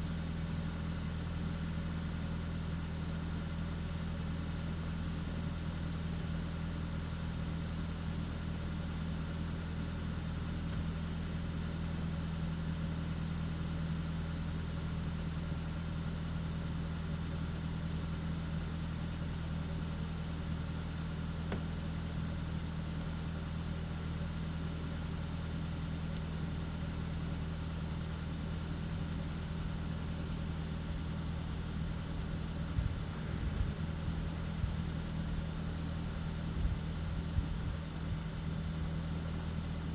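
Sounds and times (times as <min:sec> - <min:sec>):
low mechanical hum: 0:00.0 - 0:39.9.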